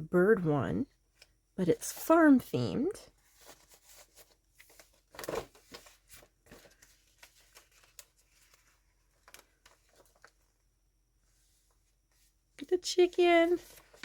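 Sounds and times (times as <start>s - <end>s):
paper pages rustling and turning: 3.2s - 10.7s, 13.4s - 14.0s.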